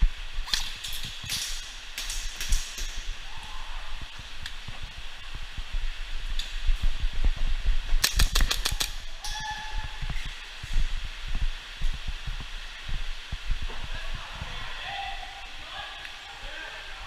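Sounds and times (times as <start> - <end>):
airsoft gun shots: 8.0 - 9.0.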